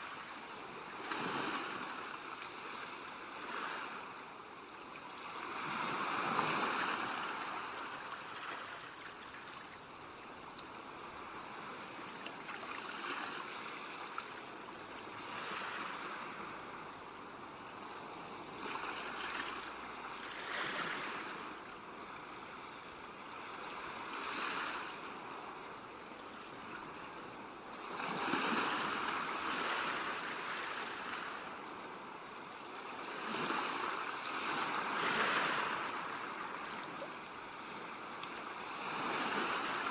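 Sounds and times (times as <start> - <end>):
ocean waves breaking: 33.0 - 39.9.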